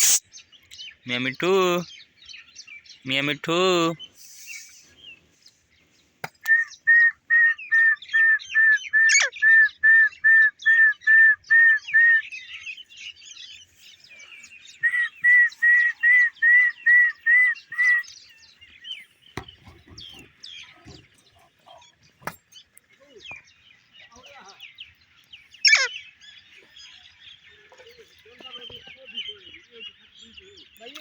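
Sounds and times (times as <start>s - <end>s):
birds chirping: 0.0s - 31.0s
parrot calling rapidly: 8.2s - 9.6s, 14.8s - 18.0s, 25.6s - 25.9s.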